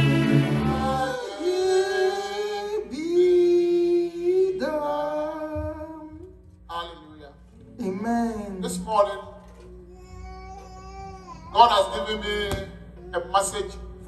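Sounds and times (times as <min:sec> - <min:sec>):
instrumental music: 0:00.0 - 0:02.0
person singing long notes: 0:00.0 - 0:06.2.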